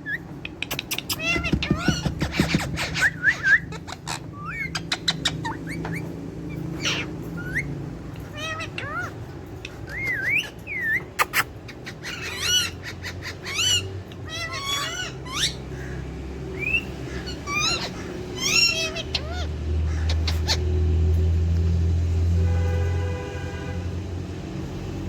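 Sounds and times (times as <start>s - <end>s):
parakeets chattering: 0.0s - 21.8s
sharp clicks: 0.4s - 2.7s.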